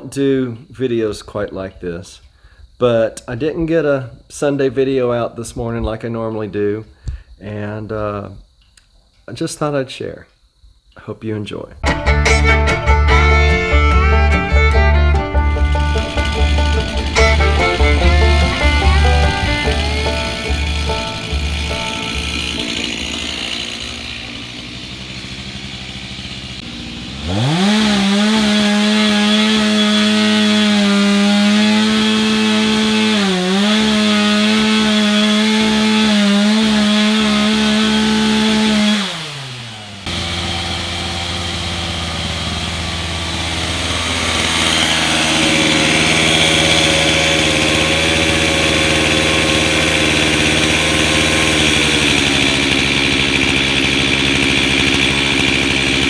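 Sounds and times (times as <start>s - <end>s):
chainsaw cutting a tree: 11.8s - 56.0s.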